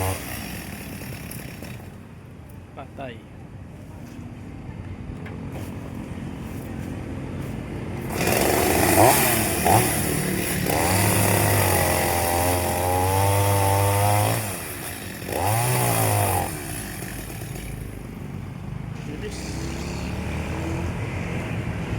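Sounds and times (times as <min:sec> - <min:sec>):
chainsaw revving and cutting wood: 0:00.0 - 0:02.0, 0:08.0 - 0:18.1, 0:19.2 - 0:21.0.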